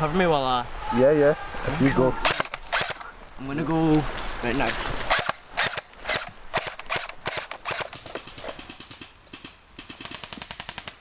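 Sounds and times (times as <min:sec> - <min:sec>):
airsoft gun shots: 0:02.2 - 0:03.0, 0:05.1 - 0:08.0.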